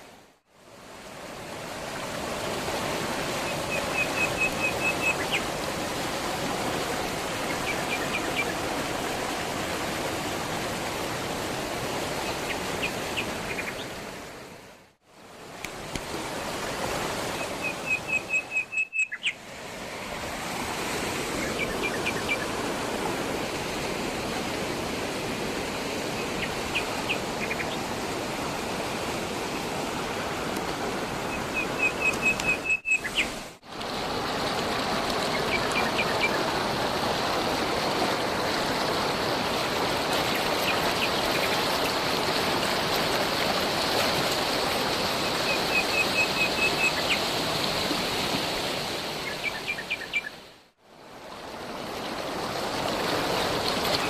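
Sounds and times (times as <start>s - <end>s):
flowing water rushing: 0.0s - 54.0s
songbird chirping: 17.6s - 19.4s.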